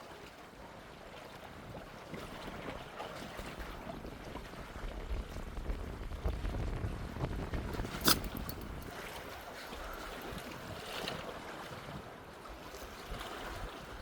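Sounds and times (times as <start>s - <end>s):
moving water: 0.0s - 14.0s
wind rumbling on microphone: 1.5s - 14.0s.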